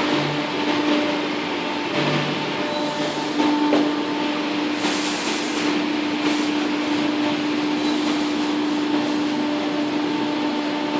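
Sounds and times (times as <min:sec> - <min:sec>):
printer machine hum: 0:00.0 - 0:10.9
printer hiss: 0:02.6 - 0:03.7, 0:04.7 - 0:10.1.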